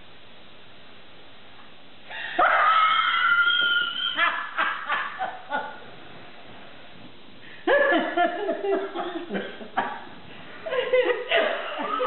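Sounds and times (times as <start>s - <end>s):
person laughing hard: 3.6s - 5.8s, 7.6s - 12.0s.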